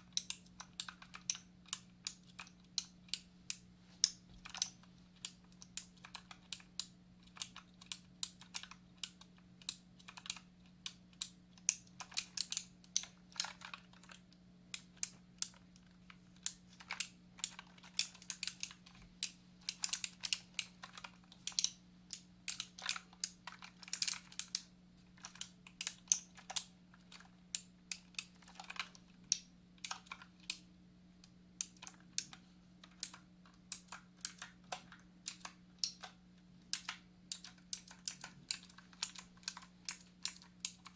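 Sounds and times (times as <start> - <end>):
typing on computer keyboard: 0.0 - 14.2, 14.8 - 30.6, 31.6 - 40.9.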